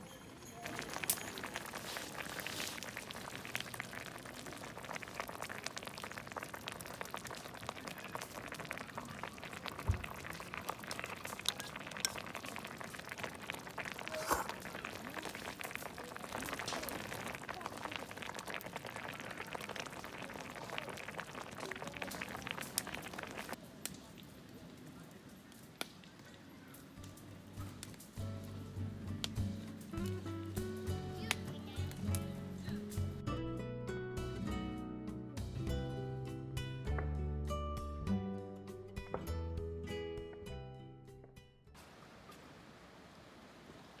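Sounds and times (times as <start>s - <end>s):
broth bubbling in a pot: 0.3s - 33.0s.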